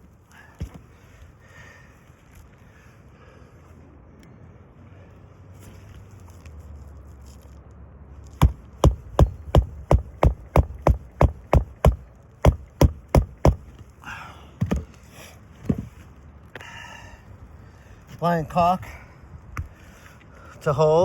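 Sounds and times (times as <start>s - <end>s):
hammer striking nails: 8.4s - 13.7s.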